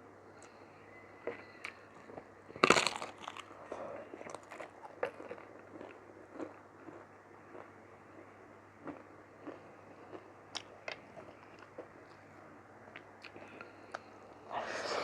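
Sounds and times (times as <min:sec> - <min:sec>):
wet chewing clicks and smacks: 0:04.1 - 0:12.3, 0:12.9 - 0:14.1.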